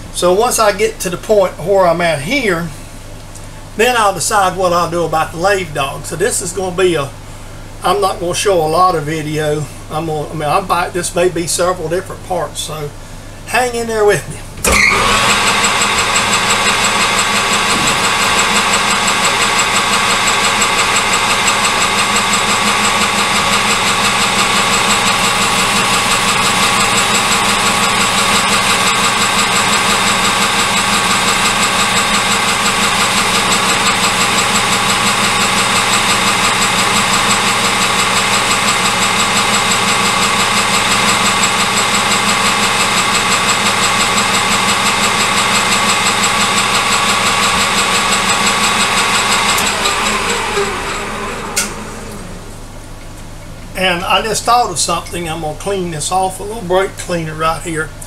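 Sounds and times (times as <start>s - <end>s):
metal lathe humming: 14.6s - 52.6s.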